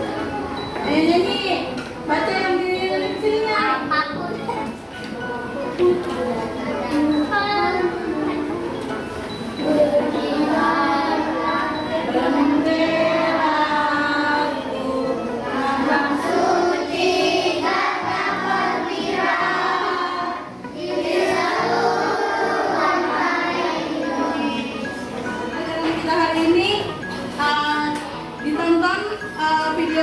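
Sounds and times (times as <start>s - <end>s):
children singing in unison: 9.5s - 25.4s.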